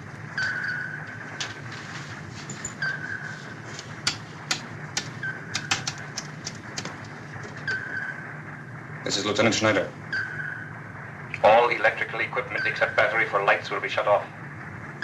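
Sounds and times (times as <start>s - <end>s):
steady low hum: 0.0s - 15.0s
sonar pings: 0.4s - 1.0s, 2.6s - 3.3s, 10.1s - 10.7s
sharp clicks: 4.0s - 7.6s.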